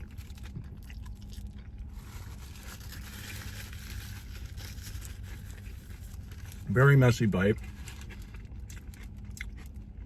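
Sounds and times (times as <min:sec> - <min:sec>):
person chewing food: 0:00.0 - 0:03.4, 0:07.6 - 0:10.0
soft crunching and scraping: 0:00.0 - 0:10.0
steady low rumble: 0:00.0 - 0:10.0.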